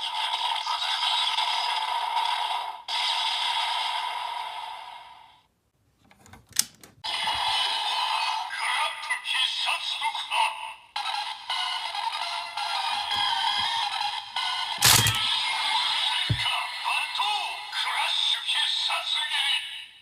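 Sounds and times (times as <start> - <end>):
sharp click: 6.1 - 7.0, 14.8 - 15.3.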